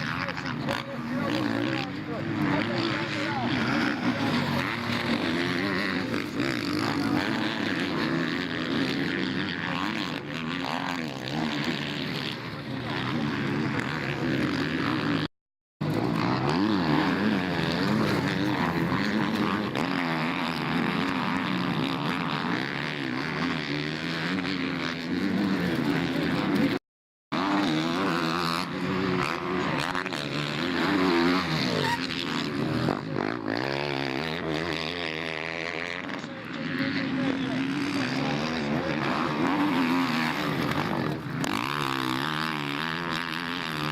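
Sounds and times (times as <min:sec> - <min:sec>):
motocross bike engines revving: 0:00.0 - 0:43.9.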